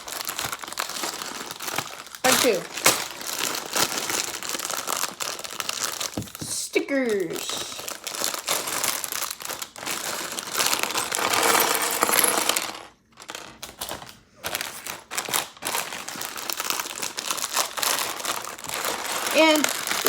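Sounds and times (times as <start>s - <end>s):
plastic bags crinkling: 0.0s - 20.0s
small plastic pieces rattling: 7.2s - 14.1s, 15.2s - 20.0s.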